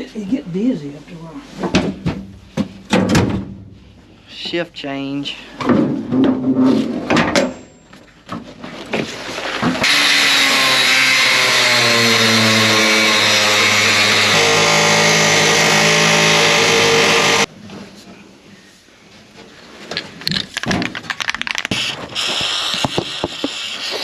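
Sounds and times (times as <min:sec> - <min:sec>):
pneumatic air hammer: 0:21.7 - 0:24.0.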